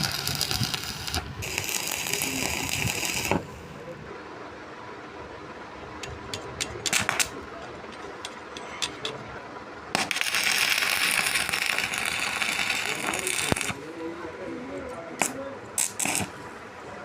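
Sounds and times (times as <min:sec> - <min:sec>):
electric welding arc crackling: 0:00.0 - 0:03.7, 0:06.9 - 0:07.3, 0:10.0 - 0:13.8, 0:15.2 - 0:16.4
sharp metal clicks and taps: 0:06.0 - 0:07.3.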